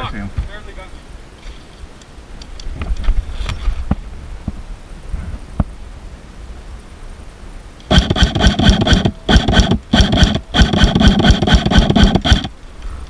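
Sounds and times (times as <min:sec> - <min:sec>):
airsoft rifle full-auto bursts: 0:07.9 - 0:12.5.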